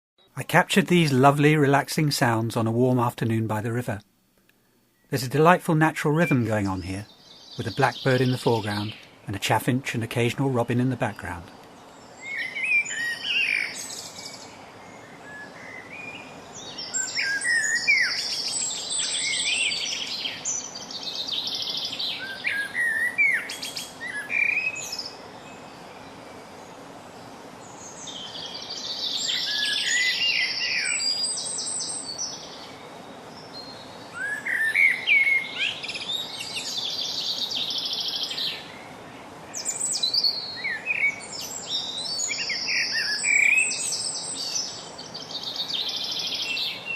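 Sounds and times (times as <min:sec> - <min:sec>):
distant chaffinch singing: 0:00.2 - 0:46.9
blackbird singing: 0:05.0 - 0:26.2, 0:27.6 - 0:38.9, 0:39.5 - 0:46.9.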